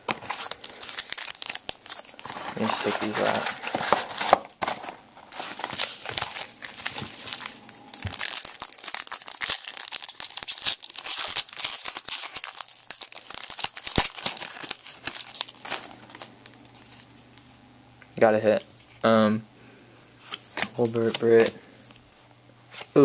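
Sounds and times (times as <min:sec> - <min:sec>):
card wrappers tearing and crinkling: 0:00.0 - 0:17.1, 0:20.2 - 0:21.6
cards shuffled: 0:01.8 - 0:08.4, 0:20.2 - 0:21.6.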